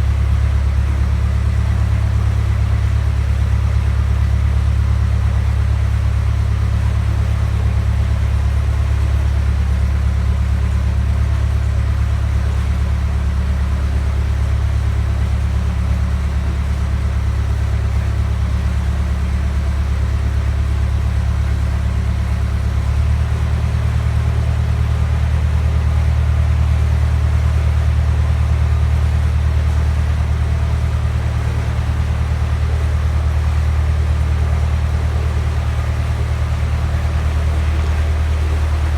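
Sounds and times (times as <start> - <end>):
boat engine throbbing: 26.0 - 38.9.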